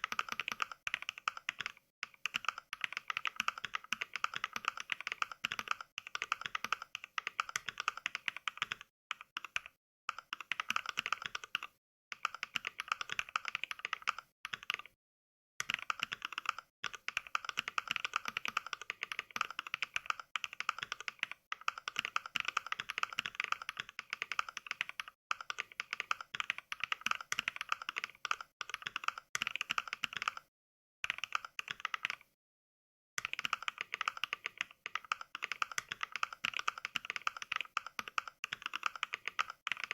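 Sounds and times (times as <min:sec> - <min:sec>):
mechanical keyboard typing: 0:00.0 - 0:15.0, 0:15.6 - 0:32.4, 0:33.2 - 0:39.9.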